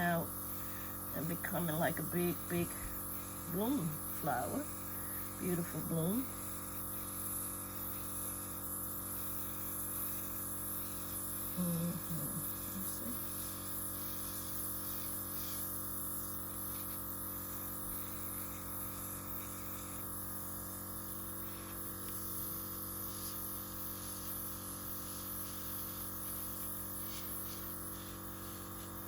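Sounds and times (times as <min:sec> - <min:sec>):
air compressor humming: 0:00.0 - 0:29.0
air hissing: 0:02.4 - 0:29.0.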